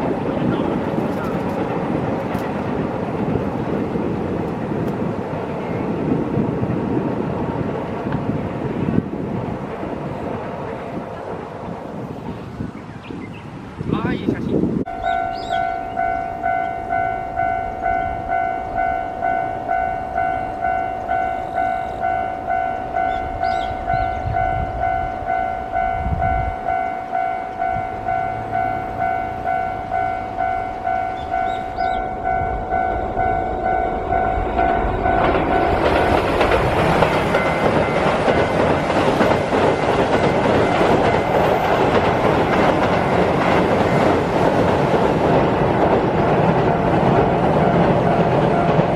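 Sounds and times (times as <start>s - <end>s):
electric train crossing steel bridge: 0.0s - 48.9s
level-crossing warning bell ringing: 14.8s - 45.7s, 46.4s - 48.9s.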